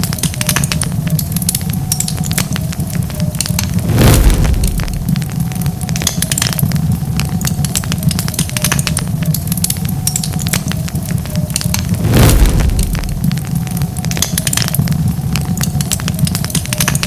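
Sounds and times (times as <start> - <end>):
low rumble of flames: 0.0 - 17.0
wood fire crackling and popping: 0.0 - 17.0
rush of noise: 3.6 - 5.5, 11.8 - 13.9.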